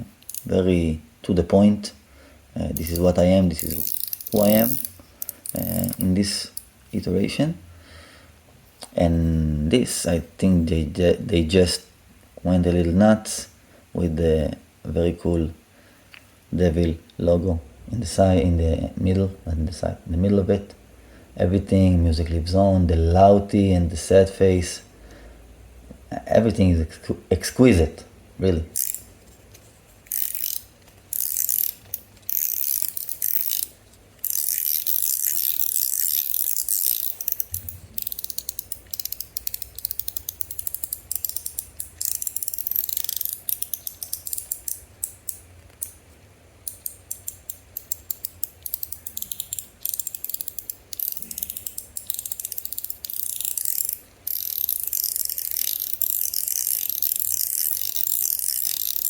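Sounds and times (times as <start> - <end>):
metallic clicking and ratcheting: 0.2 - 0.5, 2.8 - 6.7, 28.8 - 29.1, 30.1 - 46.0, 46.6 - 59.0.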